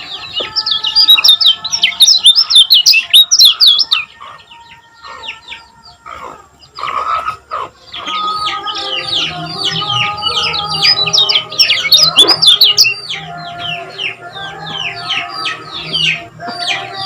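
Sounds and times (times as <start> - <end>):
bird chirping: 0.0 - 17.0.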